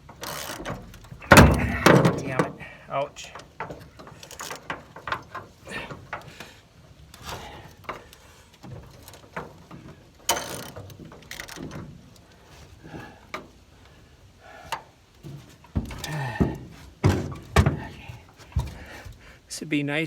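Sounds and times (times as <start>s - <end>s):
tool knocking against truck bed: 1.2s - 2.5s, 15.3s - 18.9s.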